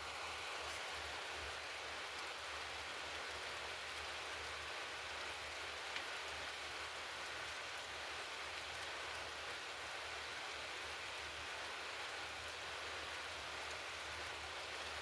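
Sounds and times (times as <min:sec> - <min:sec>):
steady hiss: 0:00.0 - 0:15.0
faint tick: 0:05.9 - 0:06.2.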